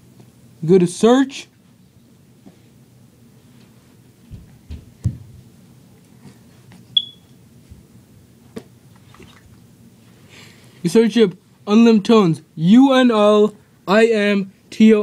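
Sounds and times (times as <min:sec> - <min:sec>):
low steady hum: 0:00.0 - 0:15.0
short high beep: 0:07.0 - 0:07.3.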